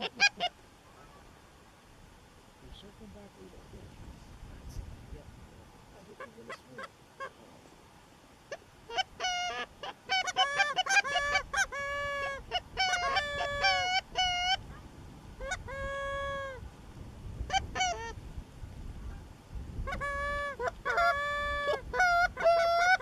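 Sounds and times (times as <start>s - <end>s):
goose honking: 0.0s - 1.7s, 6.0s - 7.5s, 8.5s - 14.8s, 15.4s - 16.6s, 17.5s - 18.2s, 19.9s - 23.0s.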